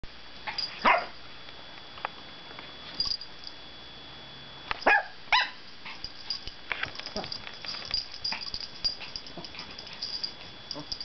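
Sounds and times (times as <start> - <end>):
dog whining yelps: 4.8 - 5.6.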